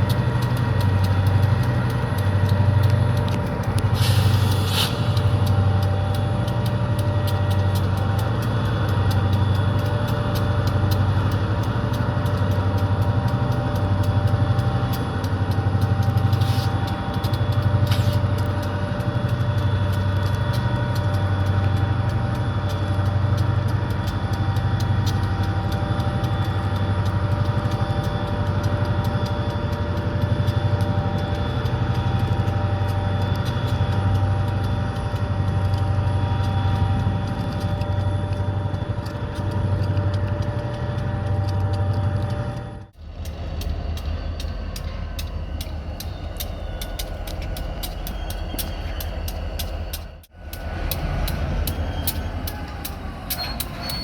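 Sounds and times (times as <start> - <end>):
diesel locomotive engine throb: 0.0 - 54.0
turbo whine: 0.0 - 54.0
short air hisses: 3.9 - 5.4.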